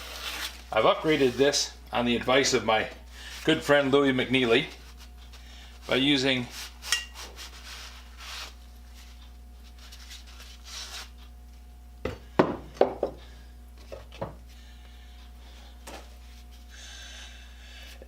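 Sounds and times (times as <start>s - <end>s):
low electrical hum: 0.0s - 18.0s
objects knocking on workbench: 12.0s - 13.2s.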